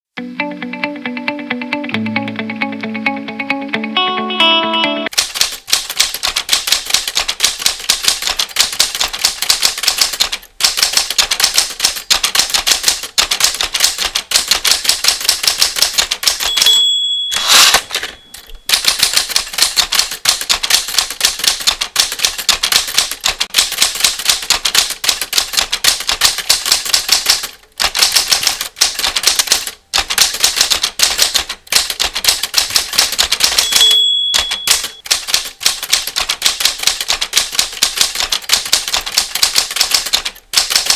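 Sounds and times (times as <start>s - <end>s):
typewriter keys clacking: 5.1s - 40.9s
typewriter bell ding: 16.3s - 19.5s, 33.4s - 35.2s.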